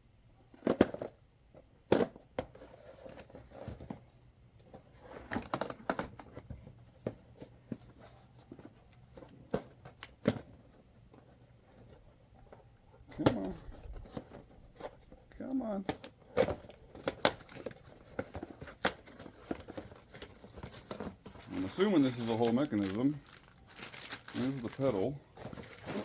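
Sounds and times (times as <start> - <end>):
packaging tearing and crinkling: 15.9 - 26.0.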